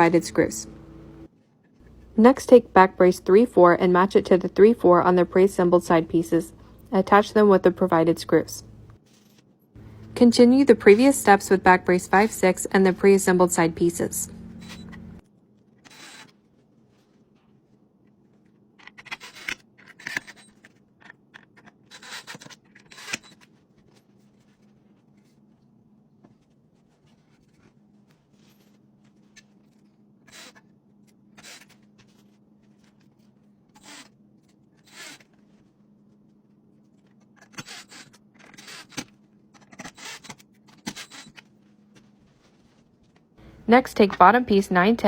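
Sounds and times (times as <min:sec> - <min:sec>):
faint steady low hum: 0:00.0 - 0:09.0
wooden pieces scraping and rubbing: 0:34.8 - 0:35.4.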